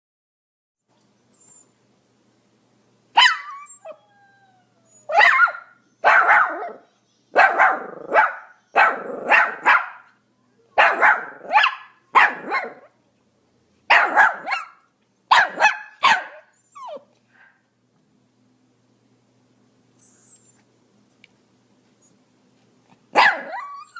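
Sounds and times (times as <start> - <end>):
small dog yapping: 3.2 - 4.0, 5.1 - 10.1, 10.8 - 12.9, 13.9 - 17.1, 23.1 - 23.9.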